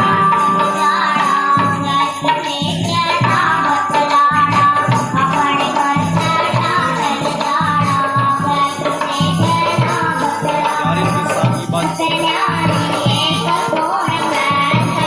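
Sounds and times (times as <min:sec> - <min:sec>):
person singing: 0:00.0 - 0:15.0
steady drum beat: 0:00.0 - 0:15.0.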